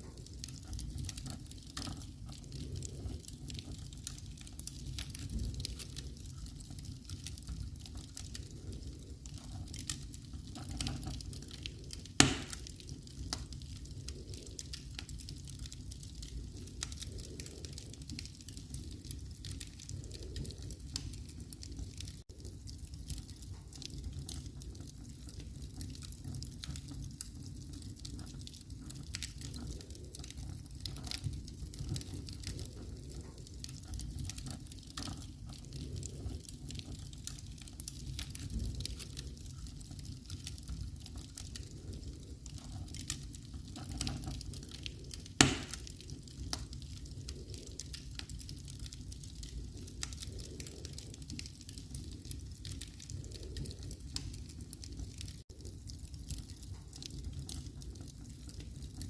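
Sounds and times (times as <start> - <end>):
wood fire crackling: 0.0 - 59.0
loud sharp pop from fire: 12.2 - 12.7, 45.4 - 45.8.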